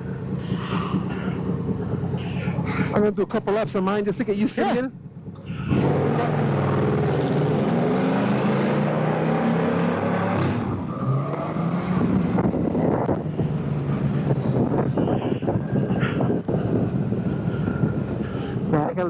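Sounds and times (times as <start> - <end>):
motorcycle engine accelerating: 0.0 - 2.8, 5.0 - 15.0.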